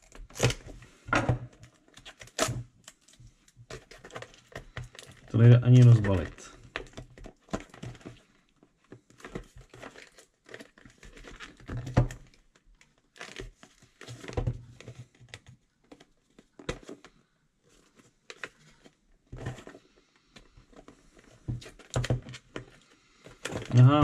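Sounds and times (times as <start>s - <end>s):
packaging crinkling and tearing: 0.0s - 0.7s, 9.2s - 12.4s, 13.0s - 14.4s.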